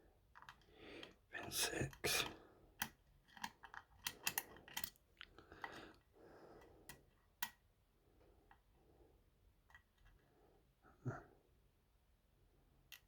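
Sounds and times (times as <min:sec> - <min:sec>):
lock pick metallic clicks: 0:02.8 - 0:05.0.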